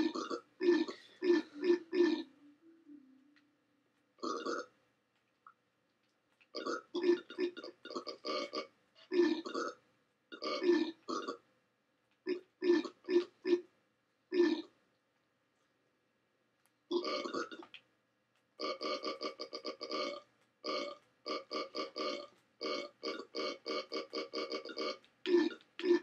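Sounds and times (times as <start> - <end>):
loud burps: 0.0 - 2.3, 4.2 - 4.7, 6.6 - 11.4, 16.9 - 17.6, 18.6 - 26.0.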